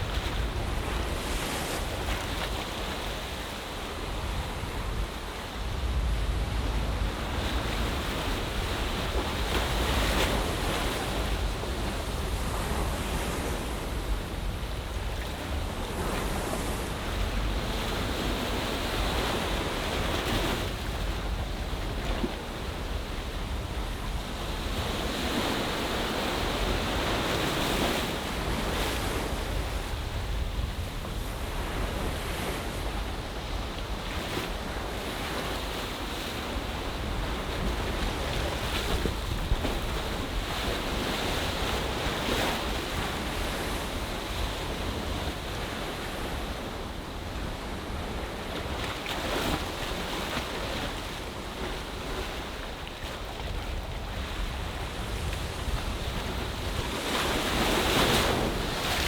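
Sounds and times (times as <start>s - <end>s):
waves washing ashore: 0.0s - 59.0s.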